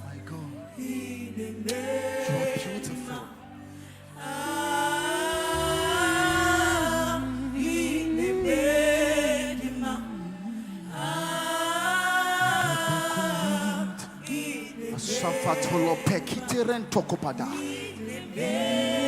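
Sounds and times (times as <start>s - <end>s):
voices singing a cappella: 0.0s - 19.0s
low sustained note: 2.4s - 14.0s.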